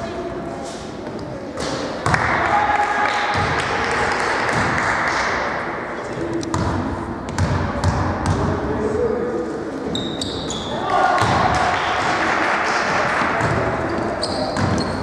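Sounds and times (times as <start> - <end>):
hubbub of many voices: 0.0 - 15.0
basketball bouncing on court: 6.5 - 8.5, 11.2 - 11.6, 13.2 - 15.0.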